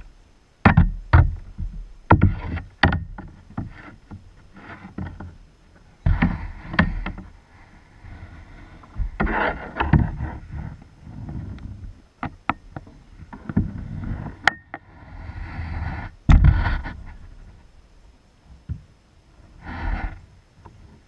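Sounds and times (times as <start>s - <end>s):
heavy low thump: 16.2s - 17.1s.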